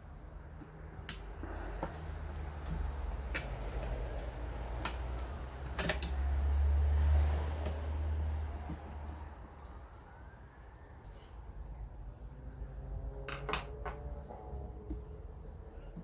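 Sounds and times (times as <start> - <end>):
clicks of tools and fan parts: 0.5 - 6.6, 12.8 - 15.1.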